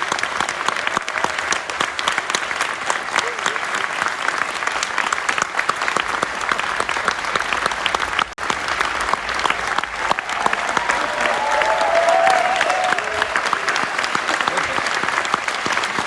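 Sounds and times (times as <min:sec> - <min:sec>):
audience applauding: 0:00.0 - 0:16.0.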